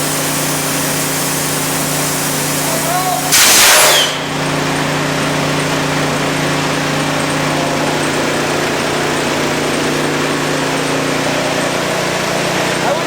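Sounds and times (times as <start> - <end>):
air hissing: 0.0 - 4.3
air compressor humming: 0.0 - 13.0.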